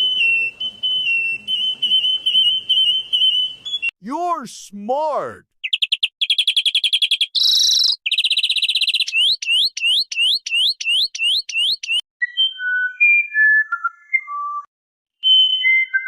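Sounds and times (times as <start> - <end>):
bird calls: 0.0 - 3.9.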